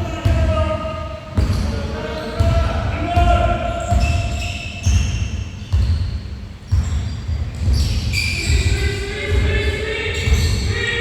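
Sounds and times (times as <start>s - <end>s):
basketballs bouncing on gym floor: 0.0s - 11.0s
high squeaks: 6.7s - 11.0s.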